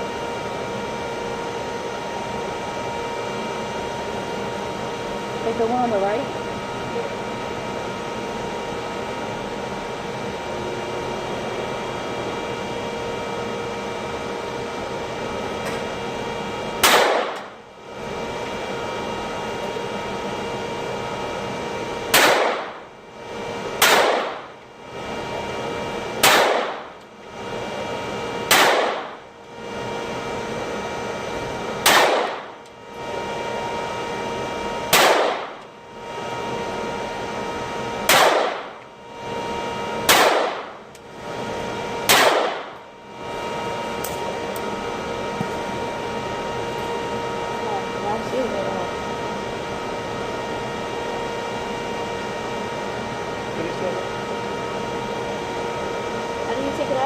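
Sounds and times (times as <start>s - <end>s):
steady mechanical hum: 0.0s - 57.0s
gunshots: 16.8s - 17.4s, 22.1s - 22.8s, 23.8s - 24.4s, 26.2s - 26.8s, 28.5s - 29.1s, 31.8s - 32.5s, 34.9s - 35.5s, 38.1s - 38.7s, 40.1s - 40.7s, 42.1s - 42.7s.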